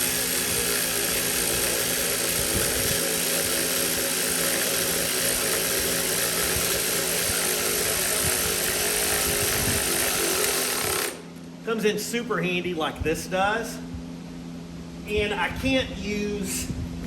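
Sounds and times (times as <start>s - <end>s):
loud machine whir: 0.0s - 11.4s.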